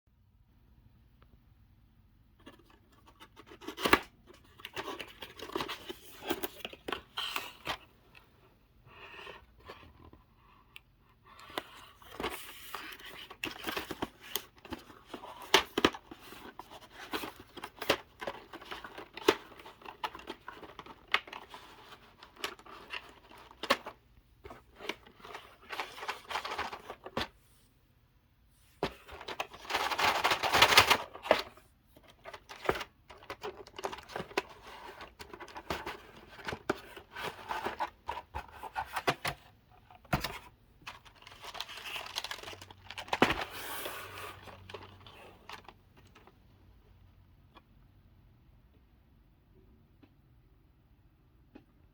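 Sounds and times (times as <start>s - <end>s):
plastic and paper crinkling: 11.4s - 27.6s, 28.6s - 46.4s.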